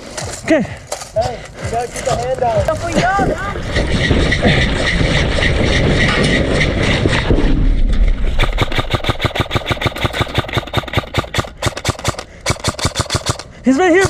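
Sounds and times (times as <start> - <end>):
dense rumbling noise: 1.6 - 11.6
airsoft gun firing full auto: 8.4 - 13.5.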